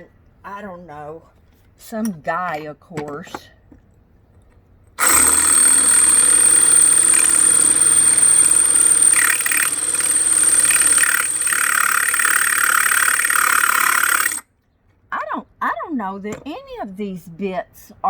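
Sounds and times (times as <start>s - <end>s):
drill bit grinding: 5.0s - 14.4s
electric drill whining: 5.0s - 14.4s.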